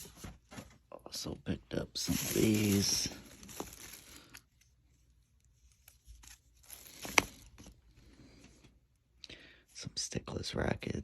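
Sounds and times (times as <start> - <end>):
packaging rustling: 2.0 - 4.5, 5.8 - 7.8.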